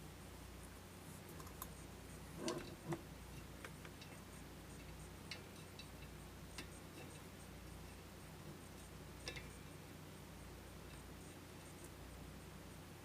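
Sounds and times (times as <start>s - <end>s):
steady low hum: 0.0s - 13.0s
light clicks and ticks: 1.2s - 8.0s, 8.7s - 9.8s.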